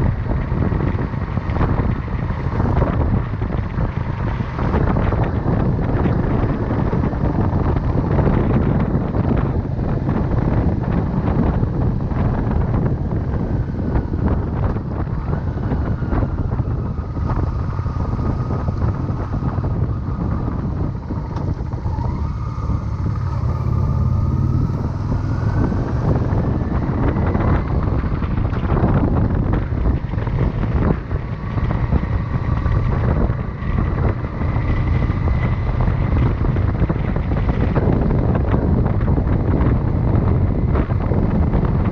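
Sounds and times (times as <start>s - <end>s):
motorcycle engine running: 0.0s - 41.9s
wind buffeting microphone: 0.0s - 41.9s
faint rising whine: 14.8s - 29.6s.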